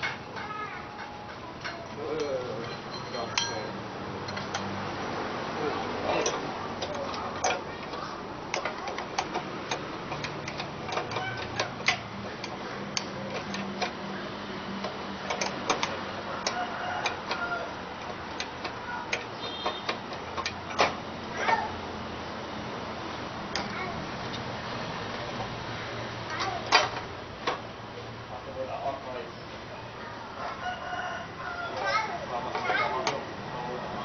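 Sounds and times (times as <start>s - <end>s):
small parts clicking and tapping: 0.0s - 5.1s, 6.1s - 21.8s, 23.5s - 27.7s.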